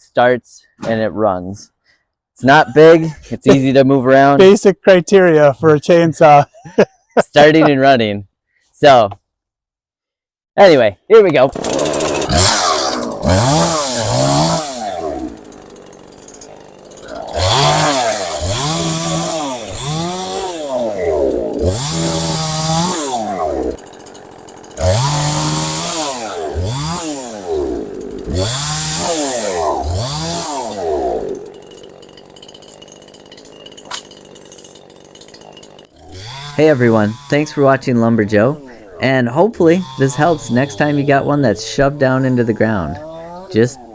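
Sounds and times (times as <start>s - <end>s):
chainsaw revving cutting wood: 11.5s - 43.9s.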